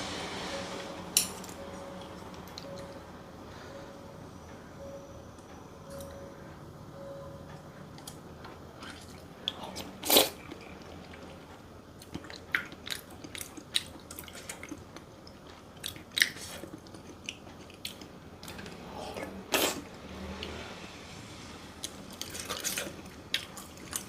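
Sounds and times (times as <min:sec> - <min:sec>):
chewing and biting: 0:08.8 - 0:19.8.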